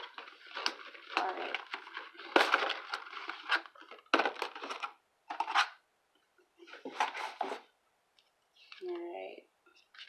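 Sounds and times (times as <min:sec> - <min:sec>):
packaging rustling and scraping: 0:00.0 - 0:05.8, 0:06.6 - 0:07.7.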